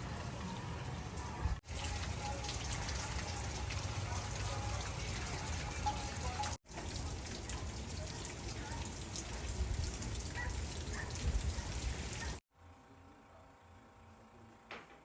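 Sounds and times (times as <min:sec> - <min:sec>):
rain falling: 0:00.0 - 0:12.4.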